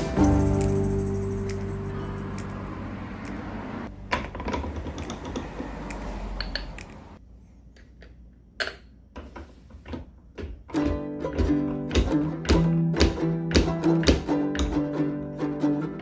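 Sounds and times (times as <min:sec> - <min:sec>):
background music: 0:00.0 - 0:04.4.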